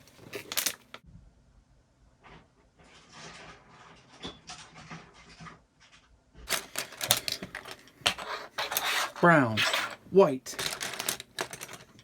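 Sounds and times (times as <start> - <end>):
plastic bag rustling: 0.0 - 1.0
plastic bricks clattering: 0.2 - 1.0, 6.5 - 12.0.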